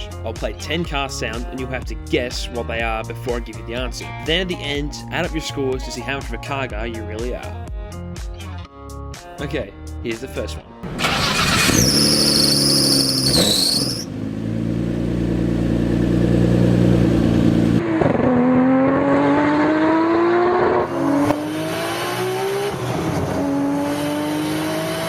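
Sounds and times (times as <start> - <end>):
car engine accelerating: 10.8 - 25.0
high squeal: 11.0 - 14.1.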